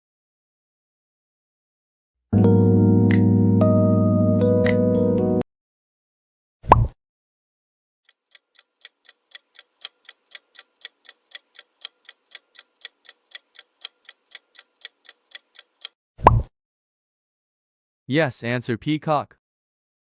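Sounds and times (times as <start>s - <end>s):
clock ticking: 8.1s - 16.0s
short pop sound effect: 16.2s - 16.5s.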